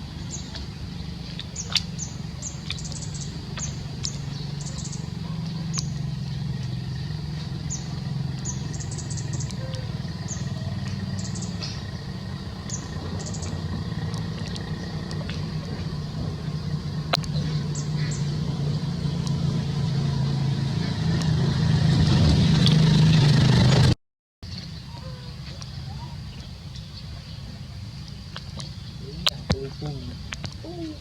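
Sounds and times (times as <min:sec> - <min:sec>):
low motor rumble: 0:00.0 - 0:31.0
high bird chirps: 0:00.1 - 0:19.5
sharp clicks: 0:17.1 - 0:17.4.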